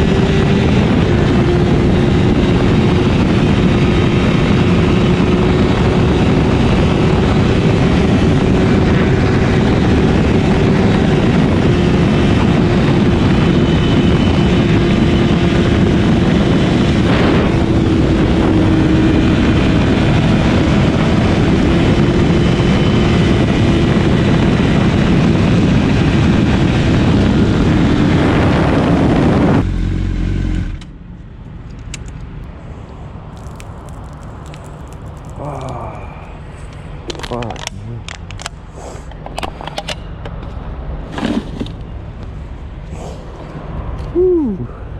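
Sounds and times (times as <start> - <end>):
wind rushing noise: 0.0 - 29.6, 42.8 - 44.0.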